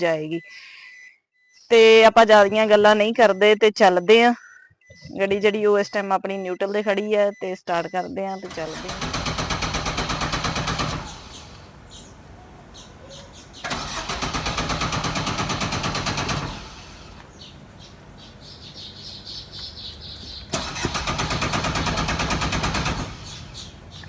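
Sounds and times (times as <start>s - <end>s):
car engine cranking: 8.5s - 18.5s, 19.8s - 24.0s.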